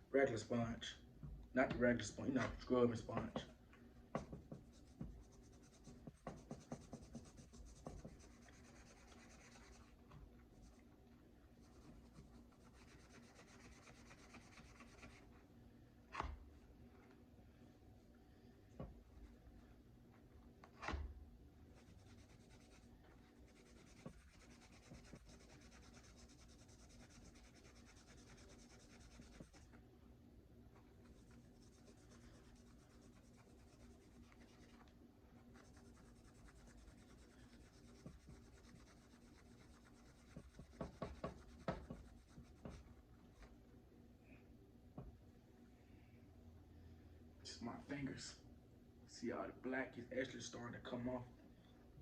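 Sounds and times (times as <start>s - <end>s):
sponge scrubbing metal: 21.7s - 29.7s, 35.5s - 43.0s.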